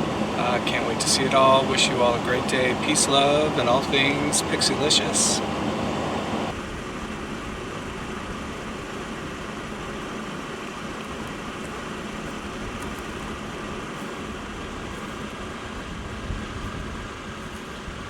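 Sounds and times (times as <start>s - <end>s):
vehicle engine idling: 0.0s - 6.6s.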